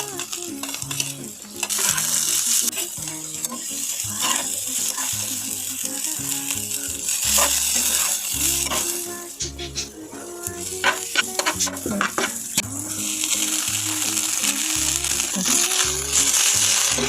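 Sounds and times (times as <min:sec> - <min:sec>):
background music with bass line: 0:00.0 - 0:17.0
food sizzling in oil: 0:00.0 - 0:17.0
spoon scraping a pan: 0:00.2 - 0:09.9.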